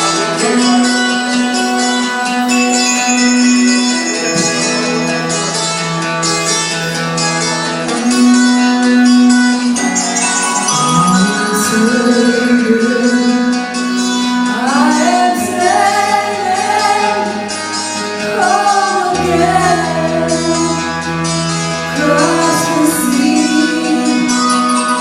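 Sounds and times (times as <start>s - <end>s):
instrumental backing with bass: 0.0s - 25.0s
woman singing: 10.9s - 13.6s, 14.5s - 20.9s, 21.9s - 25.0s.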